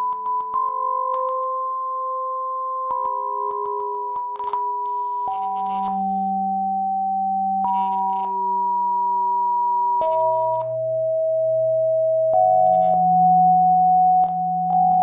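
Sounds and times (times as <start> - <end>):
synthesizer sine tones: 4.8 - 6.6.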